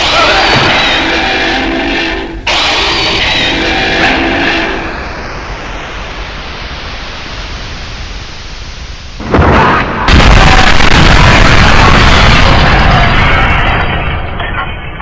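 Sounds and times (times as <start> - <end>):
rushing rumbling noise: 0.0 - 15.0
loud blast: 9.2 - 14.4.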